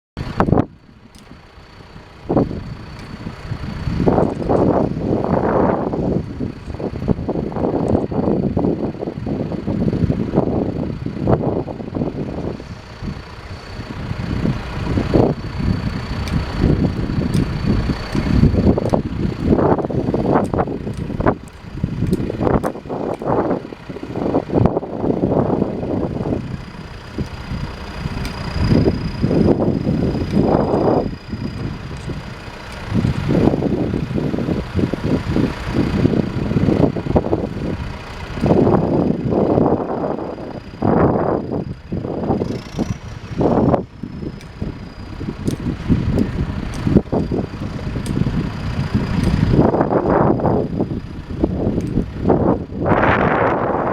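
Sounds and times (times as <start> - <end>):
diesel engine idling: 0.2 - 53.9
wind buffeting microphone: 0.2 - 53.9.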